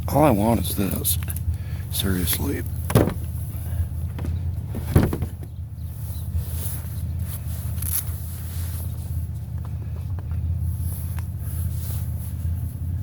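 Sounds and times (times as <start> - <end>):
vehicle engine idling: 0.0 - 13.0
sharp knock: 2.9 - 3.3.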